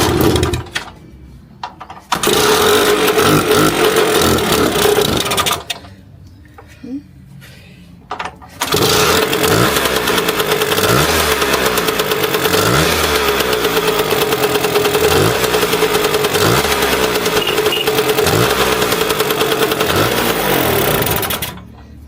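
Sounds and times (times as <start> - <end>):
scooter engine running: 0.0 - 0.8, 2.1 - 5.8, 8.6 - 21.8.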